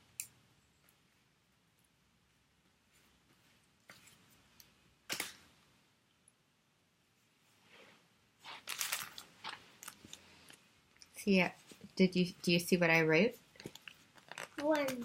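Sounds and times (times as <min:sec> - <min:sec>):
craft materials rustling: 0:08.4 - 0:10.7.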